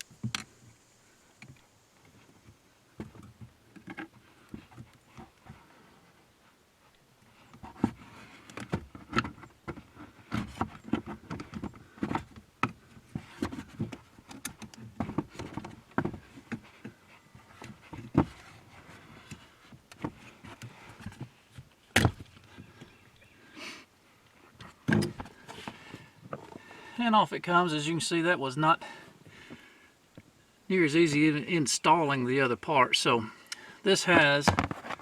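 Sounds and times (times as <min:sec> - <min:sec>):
rubber pad pried off pedal: 0:07.6 - 0:22.6, 0:24.8 - 0:26.5.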